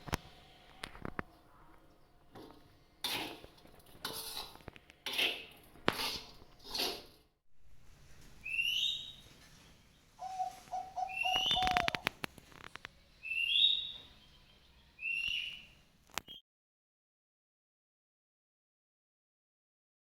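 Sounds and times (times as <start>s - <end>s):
bird whistled calls: 8.4s - 9.2s, 10.2s - 12.0s, 13.2s - 14.0s, 15.0s - 15.7s.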